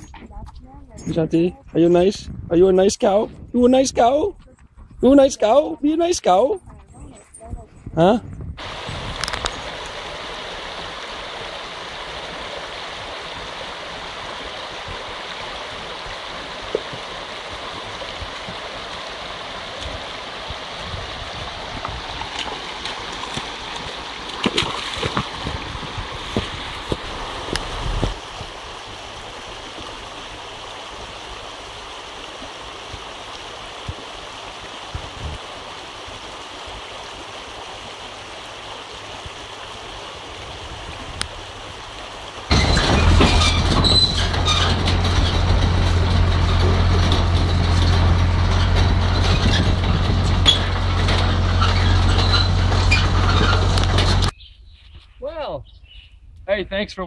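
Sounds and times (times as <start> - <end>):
low machine drone with rattling: 42.5 - 54.3.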